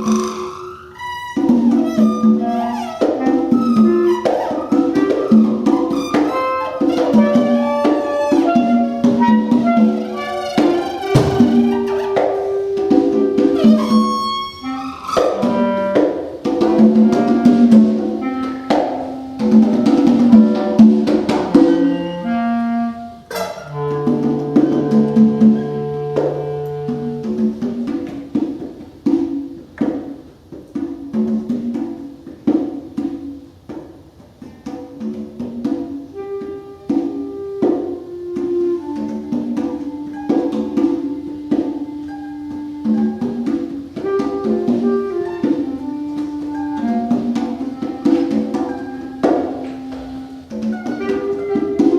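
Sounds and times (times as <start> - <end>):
wavering clarinet-like tones: 0.0 - 28.0, 36.1 - 51.9
plucked pitched notes: 0.0 - 29.7
congas: 0.0 - 51.9.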